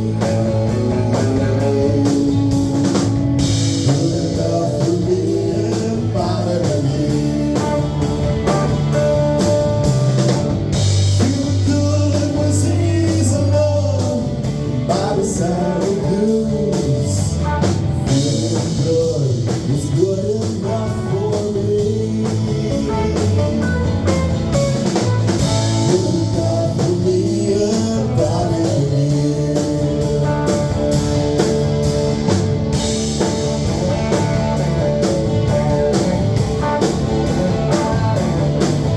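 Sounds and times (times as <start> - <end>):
person singing: 0.0 - 2.8, 3.8 - 9.1, 11.2 - 23.7, 25.4 - 30.8
band playing blues rock: 0.0 - 38.9.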